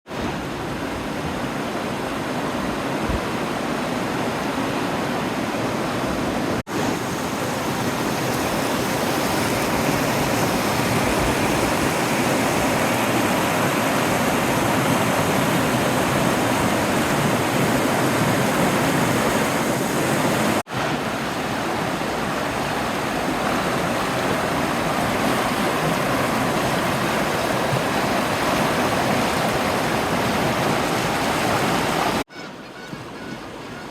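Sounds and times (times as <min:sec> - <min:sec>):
creek water rushing: 0:00.1 - 0:32.3.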